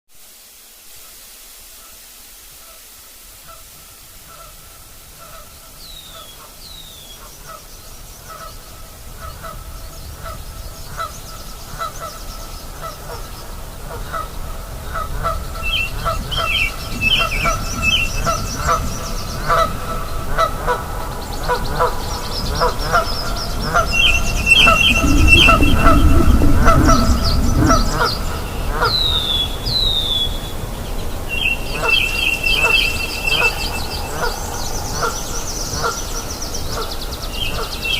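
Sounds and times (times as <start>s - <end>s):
deep low rumble: 20.8s - 29.4s
birds chattering trills: 20.9s - 29.6s
birds honking calls: 22.2s - 29.6s.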